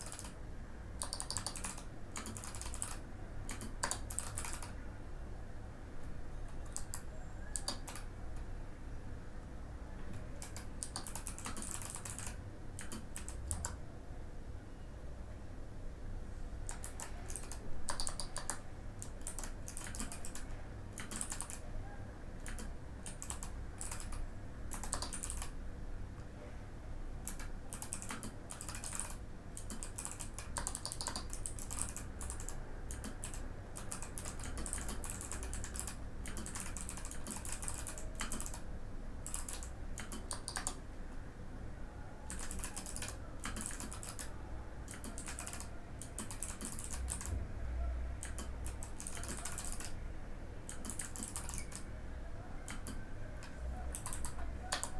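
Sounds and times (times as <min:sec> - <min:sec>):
mechanical keyboard typing clicks: 0:00.0 - 0:00.4, 0:01.0 - 0:04.8, 0:06.5 - 0:08.1, 0:10.1 - 0:13.8, 0:16.7 - 0:21.6, 0:22.4 - 0:25.6, 0:27.2 - 0:40.8, 0:42.3 - 0:47.4, 0:48.2 - 0:50.0, 0:50.6 - 0:51.9, 0:52.7 - 0:54.9
faint low hum: 0:00.0 - 0:54.9.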